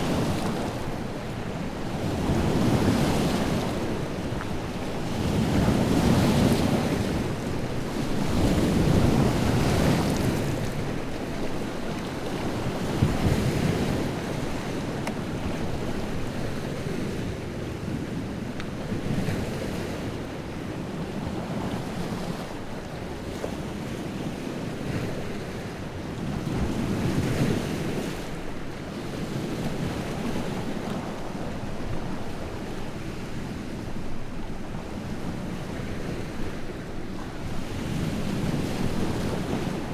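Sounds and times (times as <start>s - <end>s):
lake waves washing on shore: 21.4s - 39.9s.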